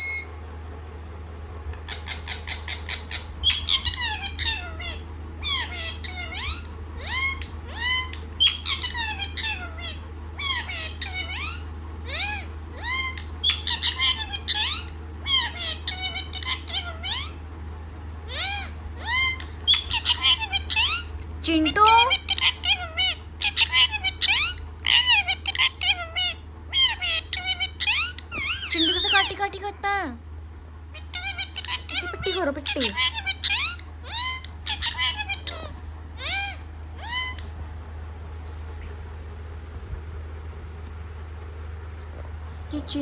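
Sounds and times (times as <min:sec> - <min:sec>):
parrot squawking: 0:00.0 - 0:00.4, 0:01.9 - 0:17.4, 0:18.3 - 0:29.6, 0:30.9 - 0:37.6
steady low hum: 0:00.0 - 0:43.0.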